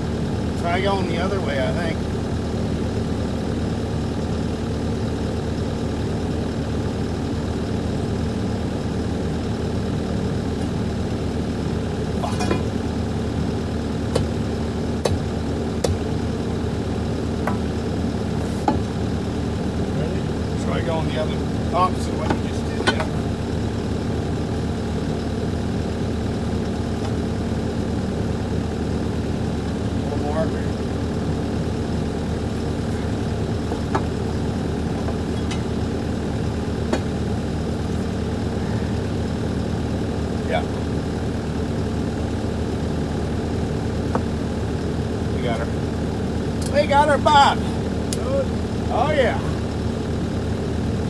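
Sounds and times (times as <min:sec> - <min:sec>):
engine idling: 0:00.0 - 0:51.0
sharp knocks: 0:14.1 - 0:14.4, 0:15.0 - 0:16.1, 0:17.4 - 0:17.7
short sharp knocks: 0:14.1 - 0:14.4.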